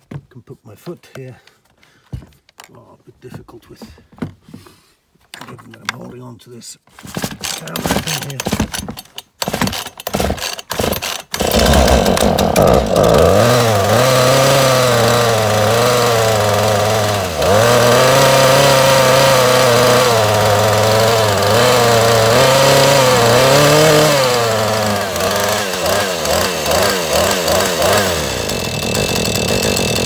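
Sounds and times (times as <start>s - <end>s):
starter cord pulls: 6.9s - 30.0s
chainsaw engine running: 7.1s - 30.0s.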